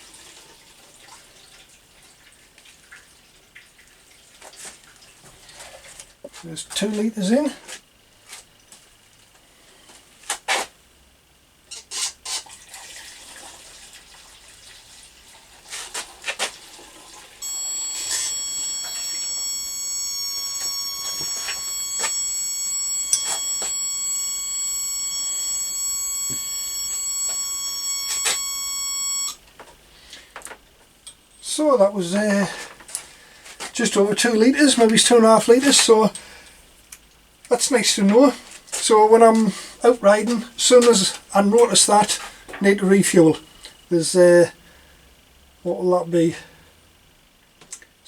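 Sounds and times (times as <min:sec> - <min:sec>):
high-pitched tester beep: 0:17.4 - 0:29.4.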